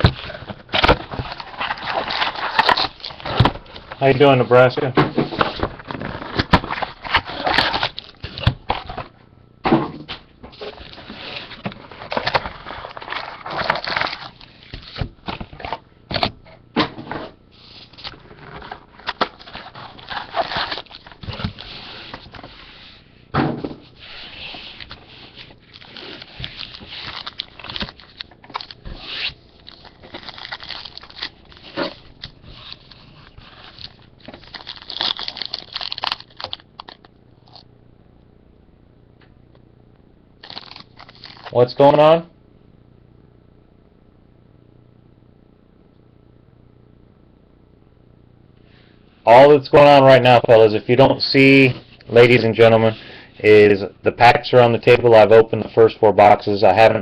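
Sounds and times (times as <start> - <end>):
card packs rustling: 0.0 - 9.1, 10.5 - 15.8, 17.6 - 22.9, 23.8 - 37.6, 40.4 - 42.2, 49.3 - 57.0.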